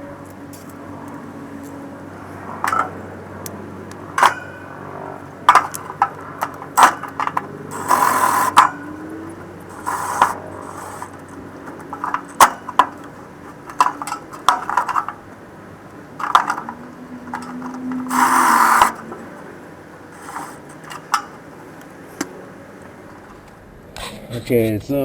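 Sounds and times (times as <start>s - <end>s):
hand tools clicking and tapping: 0.0s - 23.5s
rustling scrape: 4.0s - 23.6s.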